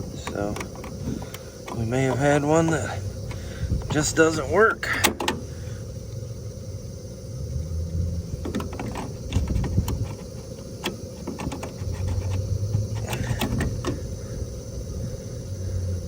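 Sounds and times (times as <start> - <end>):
small plastic parts clicking and rattling: 0.0 - 4.0, 8.4 - 14.0
low equipment hum: 0.0 - 16.0.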